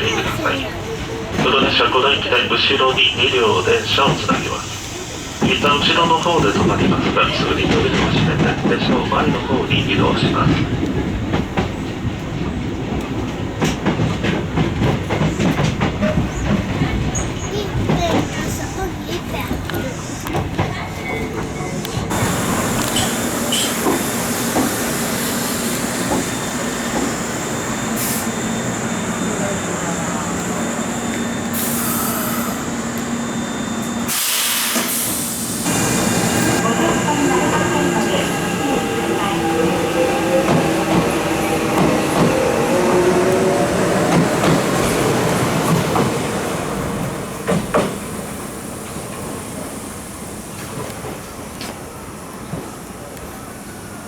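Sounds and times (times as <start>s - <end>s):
train low rumble: 0.0s - 54.0s
train wheels clacking over rail joints: 5.4s - 29.6s
air hissing bursts: 22.1s - 36.6s.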